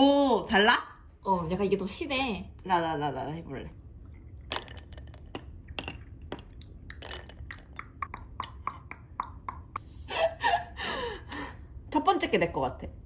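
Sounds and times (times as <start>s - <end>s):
person gulping a drink: 4.0s - 10.0s
lip sounds and clicks: 4.5s - 9.9s.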